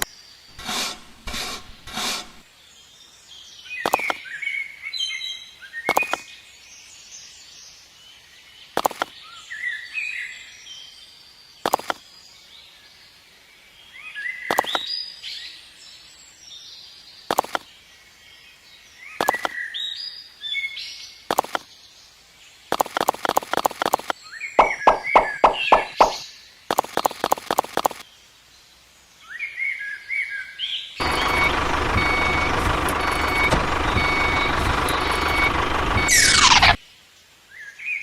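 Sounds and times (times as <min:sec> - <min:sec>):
small birds chirping: 0:00.0 - 0:10.6, 0:11.2 - 0:37.7
sharp taps: 0:22.8 - 0:26.2.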